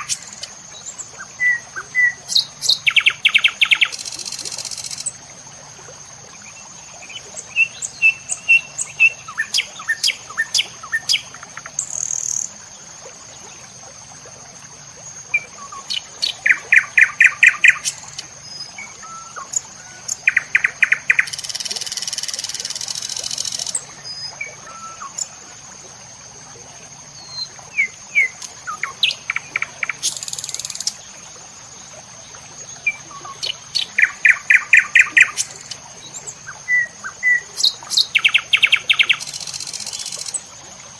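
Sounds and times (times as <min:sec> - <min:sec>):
birds chirping and trilling: 0:15.7 - 0:25.3, 0:27.2 - 0:31.0, 0:32.8 - 0:40.4.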